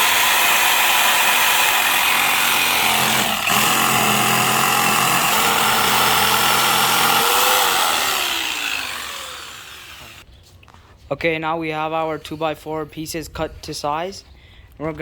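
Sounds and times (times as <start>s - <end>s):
electric jigsaw cutting wood: 0.0s - 10.2s
motor winding down whine: 1.7s - 10.2s.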